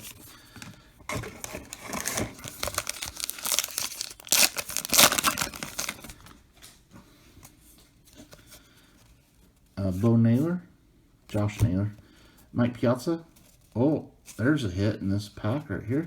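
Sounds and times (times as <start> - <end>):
wrapper tearing and crinkling: 1.1 - 6.2.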